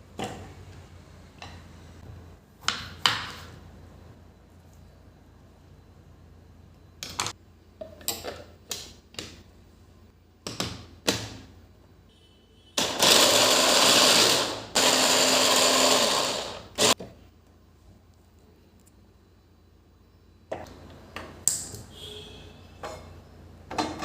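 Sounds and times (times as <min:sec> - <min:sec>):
small electric motor running: 0:13.0 - 0:17.0.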